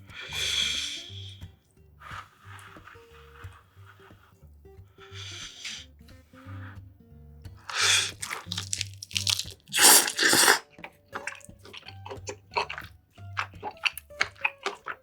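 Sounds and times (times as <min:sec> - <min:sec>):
soft background music: 0:00.0 - 0:15.0
crunchy bites: 0:07.6 - 0:15.0
wet chewing clicks: 0:07.6 - 0:15.0.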